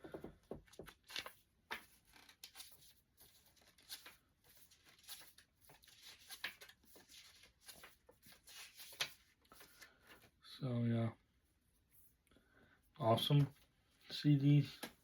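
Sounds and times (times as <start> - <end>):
cd packaging rustling: 0.6 - 10.3.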